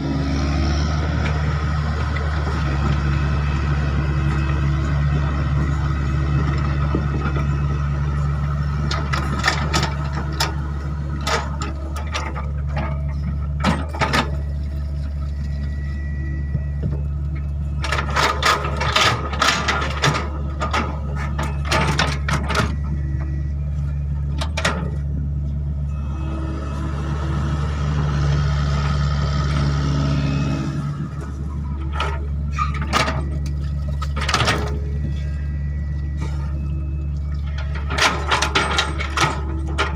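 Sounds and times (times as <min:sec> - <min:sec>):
excavator diesel engine running: 0:00.0 - 0:39.9
metal clanks and knocks: 0:08.8 - 0:14.5, 0:16.8 - 0:23.4, 0:31.2 - 0:35.2, 0:37.3 - 0:39.9.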